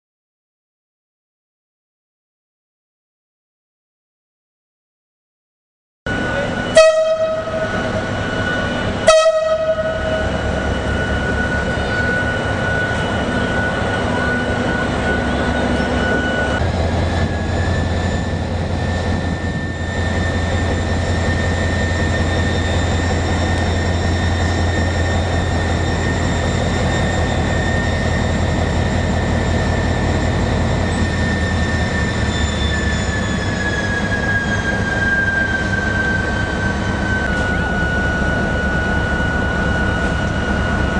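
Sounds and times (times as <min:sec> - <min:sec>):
high whine sliding downward: 0:06.1 - 0:40.9
locomotive engine running: 0:06.1 - 0:40.9
locomotive horn blasts: 0:06.2 - 0:16.6.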